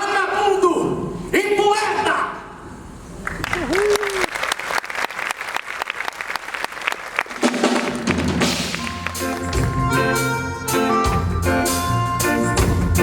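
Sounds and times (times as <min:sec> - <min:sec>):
audience applauding: 0:03.2 - 0:10.0
drum kit: 0:07.3 - 0:13.0
band playing held chords: 0:07.4 - 0:13.0.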